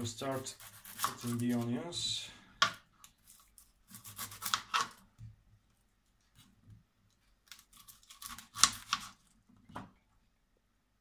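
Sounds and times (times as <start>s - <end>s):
onions rustling and scraping: 3.0s - 5.0s.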